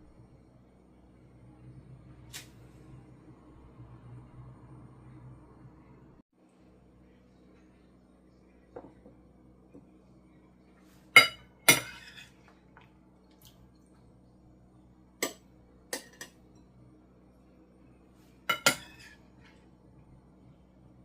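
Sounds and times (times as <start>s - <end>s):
dishes clinking: 11.2s - 12.5s, 16.0s - 16.8s, 18.5s - 19.2s.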